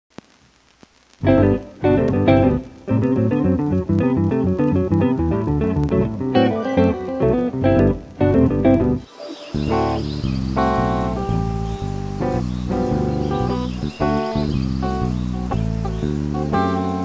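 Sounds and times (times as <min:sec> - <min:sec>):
plucked guitar runs: 0:01.2 - 0:09.0.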